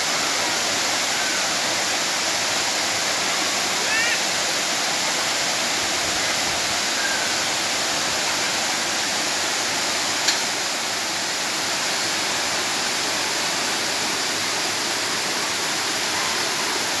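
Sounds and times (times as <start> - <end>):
waterfall rushing: 0.0 - 17.0
sharp click: 10.2 - 10.5.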